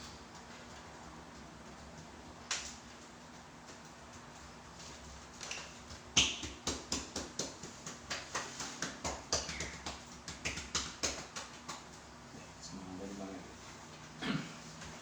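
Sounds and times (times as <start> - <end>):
hand slaps on body: 5.4 - 11.9.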